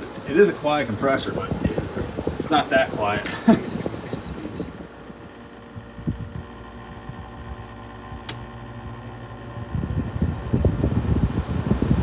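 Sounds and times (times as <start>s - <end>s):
air conditioner humming: 0.0s - 12.0s.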